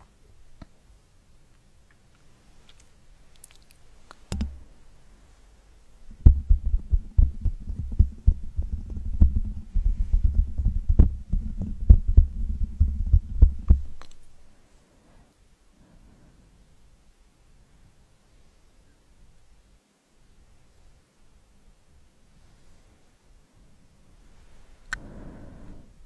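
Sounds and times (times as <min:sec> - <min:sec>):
thump: 0:04.3 - 0:04.6
hands rubbing on microphone: 0:06.1 - 0:14.4.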